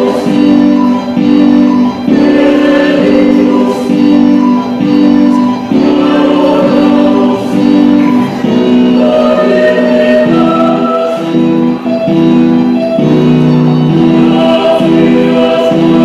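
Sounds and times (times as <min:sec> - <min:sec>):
choir singing sacred song: 0:00.0 - 0:00.6, 0:02.1 - 0:04.3, 0:05.3 - 0:11.4, 0:13.8 - 0:16.0
instrumental accompaniment: 0:00.0 - 0:16.0.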